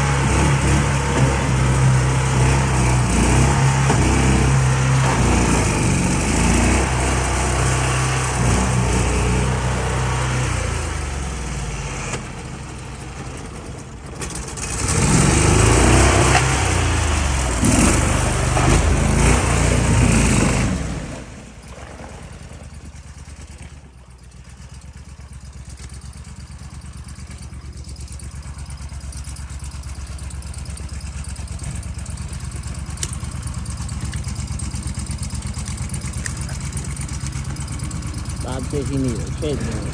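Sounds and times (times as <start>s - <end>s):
boat engine revving: 0.0s - 39.9s.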